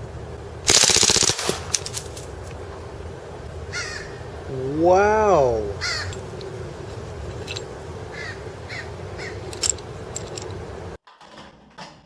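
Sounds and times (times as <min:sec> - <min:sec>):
steady background hiss: 0:00.0 - 0:11.0
short bird calls: 0:03.7 - 0:04.2, 0:05.8 - 0:06.2, 0:08.1 - 0:09.5.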